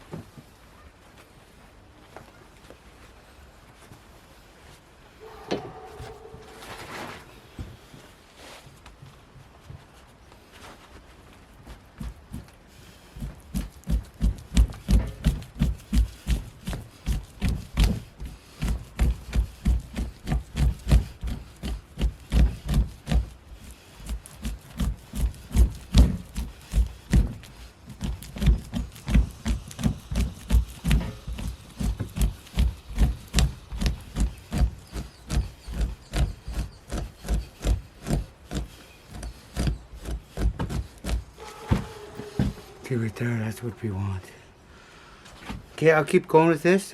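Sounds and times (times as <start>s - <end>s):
scraper scraping animal hide: 5.2s - 8.7s, 12.0s - 44.2s.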